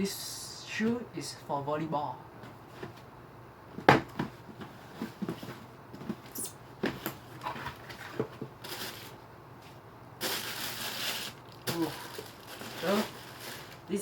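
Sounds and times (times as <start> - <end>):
sharp knock on cardboard box: 3.8 - 4.3
wrapping paper rustling: 7.6 - 9.2, 10.2 - 14.0.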